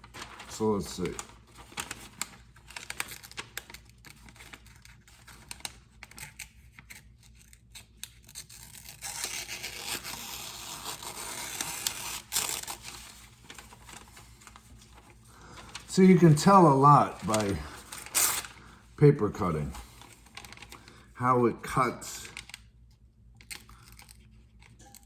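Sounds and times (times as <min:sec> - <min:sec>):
paper rustling: 0:00.0 - 0:21.1
knife slicing paper: 0:06.8 - 0:14.6, 0:17.1 - 0:18.6.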